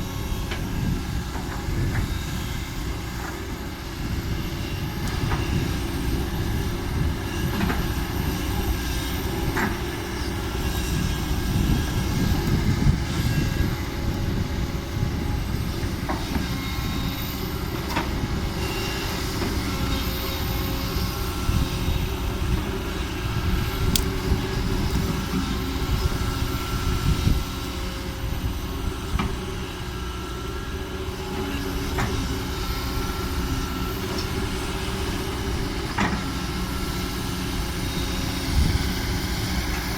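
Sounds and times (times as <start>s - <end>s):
faint whines and squeals: 0.0s - 39.9s.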